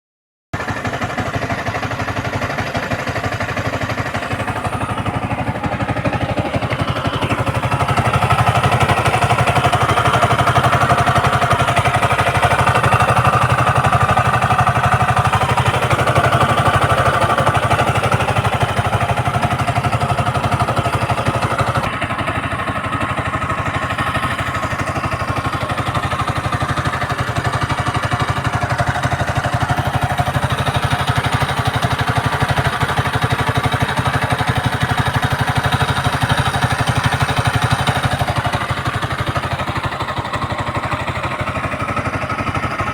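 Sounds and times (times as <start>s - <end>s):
motorcycle engine running: 0.6s - 42.9s.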